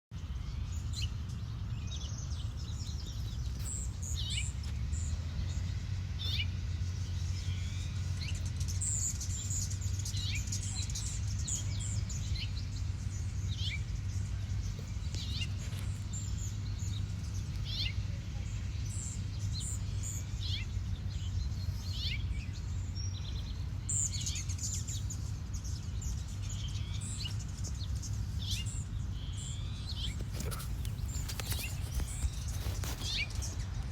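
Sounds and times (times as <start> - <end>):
small birds chirping: 0.1 - 33.9.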